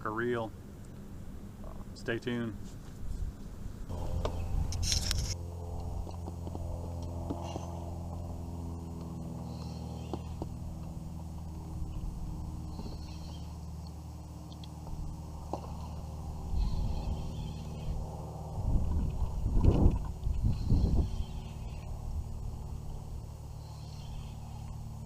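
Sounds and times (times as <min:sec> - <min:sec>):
low mechanical hum: 0:00.0 - 0:25.0
scratchy rustle: 0:04.7 - 0:05.4.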